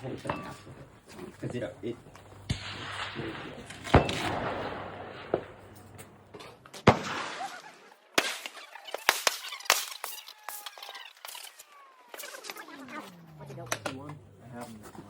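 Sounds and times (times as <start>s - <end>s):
rifle shots echoing: 1.9s - 9.9s
sharp cracks: 1.9s - 14.3s.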